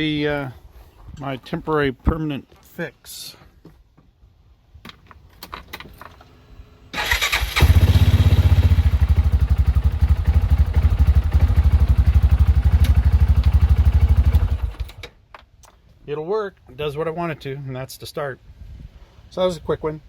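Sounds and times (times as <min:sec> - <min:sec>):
engine starter cranking: 0:06.9 - 0:08.3
engine idling: 0:07.0 - 0:14.8.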